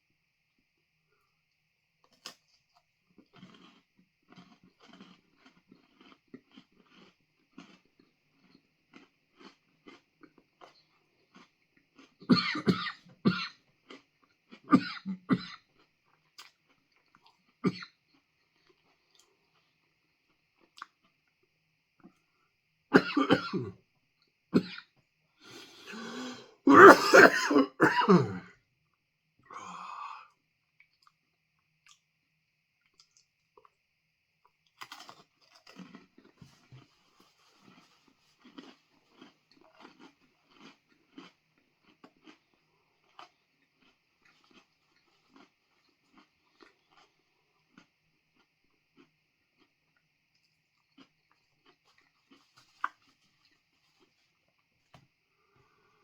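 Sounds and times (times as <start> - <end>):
faint chewing crunches: 1.2 - 22.4, 30.2 - 32.1, 32.8 - 33.8, 34.4 - 56.0
man coughing: 23.0 - 23.7, 25.9 - 28.5
man clearing his throat: 23.0 - 23.8, 26.1 - 28.5.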